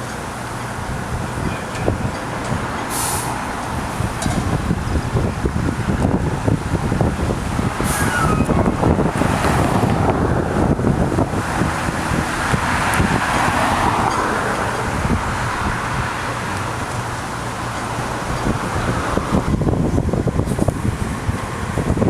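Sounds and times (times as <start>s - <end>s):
low engine rumble: 0.0s - 22.0s
wind: 0.0s - 22.0s
vehicle passing hiss: 2.8s - 4.2s, 7.4s - 21.1s.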